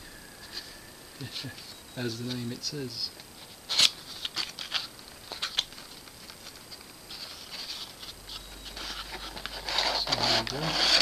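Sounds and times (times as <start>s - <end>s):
cardboard packaging rustling: 3.3s - 11.0s.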